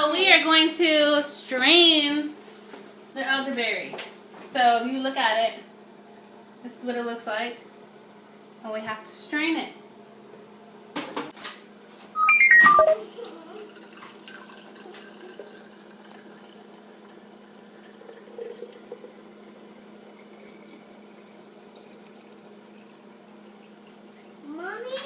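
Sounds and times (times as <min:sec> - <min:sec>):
descending electronic beeps: 0:12.2 - 0:13.0.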